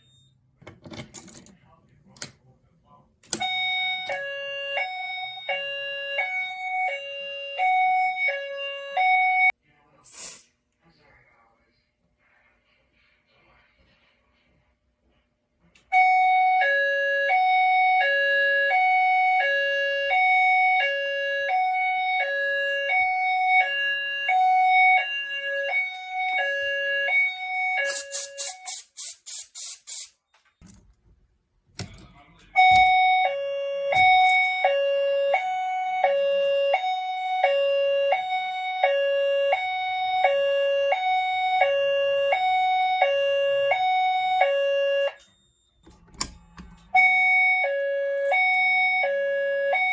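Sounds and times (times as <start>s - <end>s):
two-tone fire alarm: 0.0s - 0.4s, 3.3s - 9.6s, 15.9s - 30.2s, 32.5s - 49.9s.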